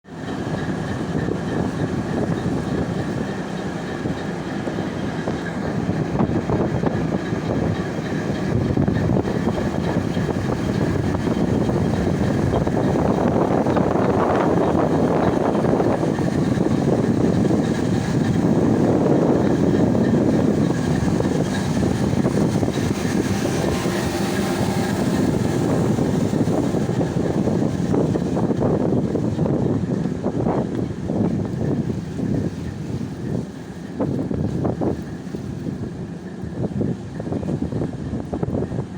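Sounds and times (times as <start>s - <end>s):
diesel engines running: 0.1s - 38.9s.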